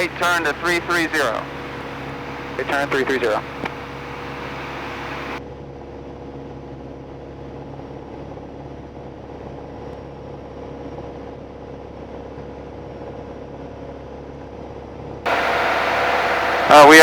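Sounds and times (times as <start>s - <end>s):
aircraft engine drone: 0.0s - 5.4s, 15.3s - 17.0s.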